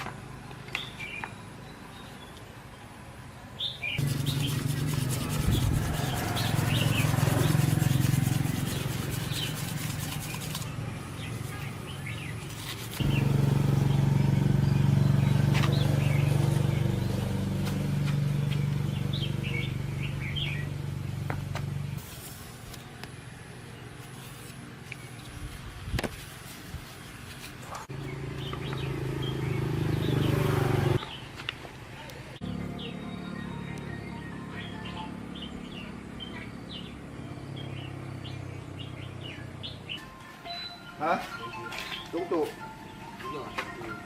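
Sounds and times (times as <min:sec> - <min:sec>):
small birds chirping: 0:00.4 - 0:03.0, 0:03.6 - 0:22.0, 0:27.3 - 0:44.0.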